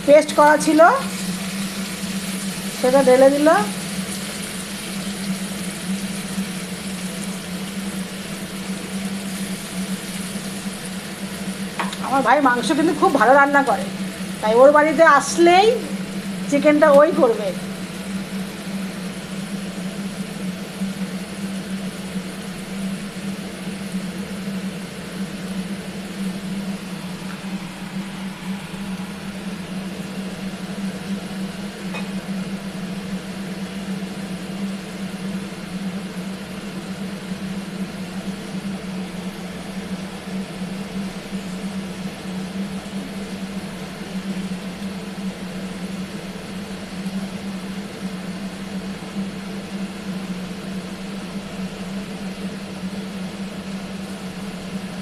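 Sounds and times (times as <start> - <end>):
onions frying in a pan: 0.0 - 55.0
steady mechanical hum: 0.0 - 55.0.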